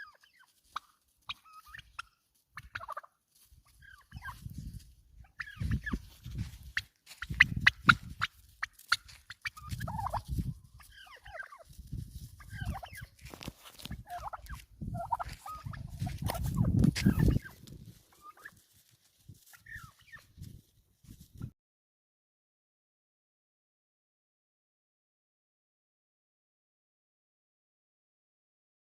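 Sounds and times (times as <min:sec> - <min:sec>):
fowl warbling calls: 0:00.0 - 0:04.4, 0:05.2 - 0:06.2, 0:06.8 - 0:11.7, 0:12.4 - 0:13.2, 0:13.8 - 0:18.6, 0:19.5 - 0:20.3.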